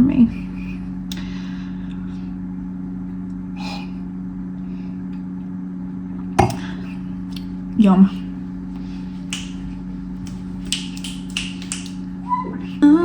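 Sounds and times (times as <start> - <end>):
low two-tone appliance hum: 0.0 - 13.0.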